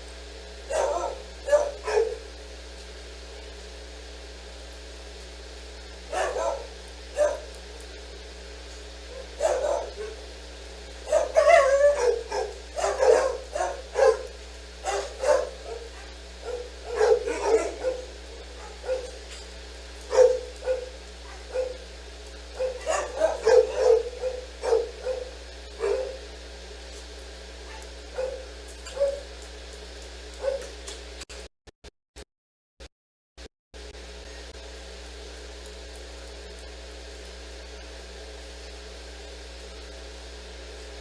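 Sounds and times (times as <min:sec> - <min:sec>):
dog barking and yipping: 0:00.7 - 0:02.3, 0:06.1 - 0:07.6, 0:09.1 - 0:10.3, 0:11.0 - 0:19.4, 0:20.1 - 0:21.9, 0:22.5 - 0:26.3, 0:27.6 - 0:29.4, 0:30.4 - 0:30.7.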